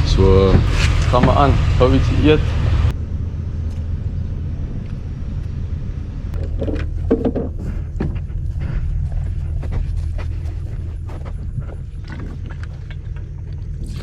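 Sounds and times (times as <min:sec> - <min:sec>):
knocks and rattles: 0:00.0 - 0:02.3, 0:06.3 - 0:14.0
engine rumbling: 0:00.0 - 0:14.0.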